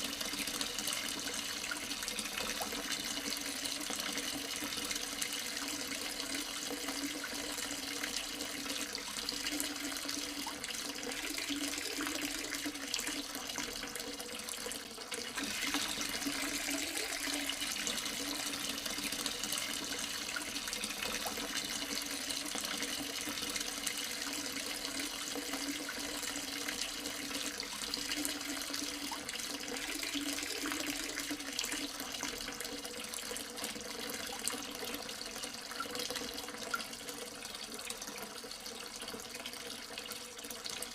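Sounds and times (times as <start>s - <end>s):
water running: 0.0s - 40.9s.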